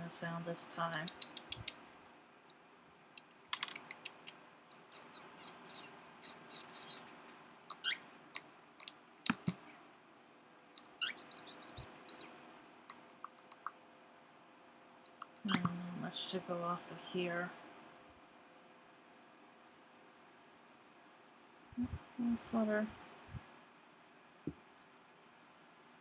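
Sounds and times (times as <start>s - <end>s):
person making kissing noises: 0.8s - 1.8s, 3.2s - 9.6s, 12.9s - 13.8s, 15.0s - 15.8s
sharp clicks: 0.8s - 1.8s, 3.2s - 4.4s, 6.5s - 9.6s, 12.9s - 13.8s
cockatiel calls: 3.8s - 8.0s, 10.8s - 12.3s.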